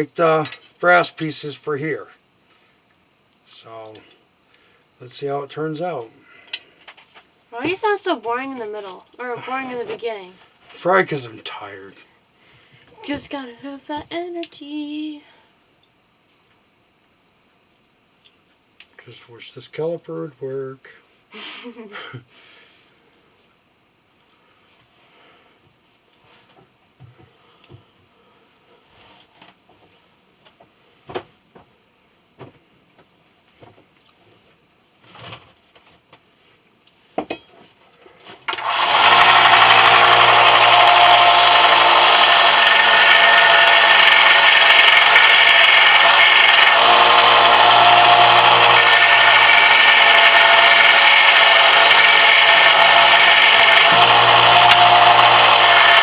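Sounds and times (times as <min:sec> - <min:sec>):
power sander grinding metal: 0:38.6 - 0:56.0.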